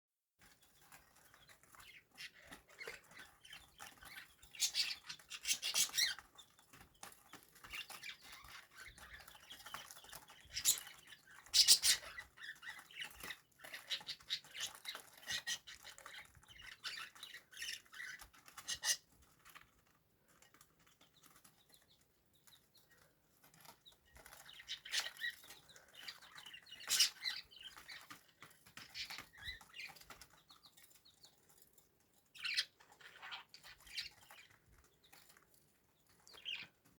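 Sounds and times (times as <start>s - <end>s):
scratching and rustling: 0.4s - 36.9s
budgie chirping: 1.2s - 6.2s, 7.7s - 19.0s, 23.8s - 30.2s, 32.3s - 34.6s.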